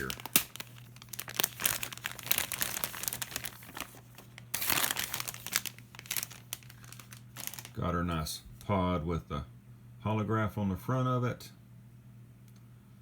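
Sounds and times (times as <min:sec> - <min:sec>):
plastic bag crinkling: 0:00.0 - 0:07.8.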